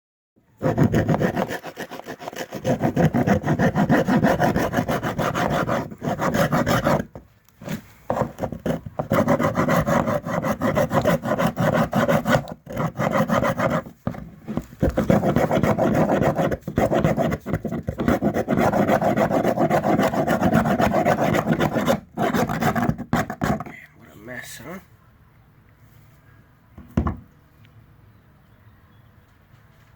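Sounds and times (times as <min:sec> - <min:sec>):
saw cutting: 0:00.6 - 0:07.1, 0:08.6 - 0:13.8.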